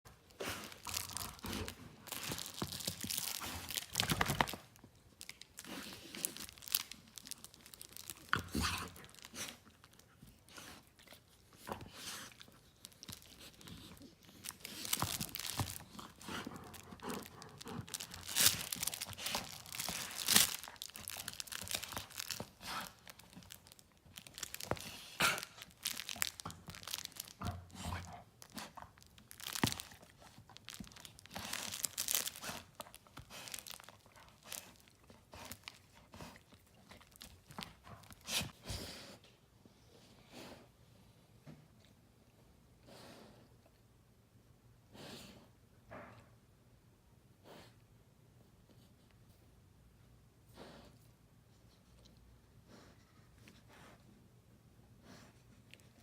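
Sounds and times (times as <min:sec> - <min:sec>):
dog ripping and crunching toy: 0:00.1 - 0:38.6.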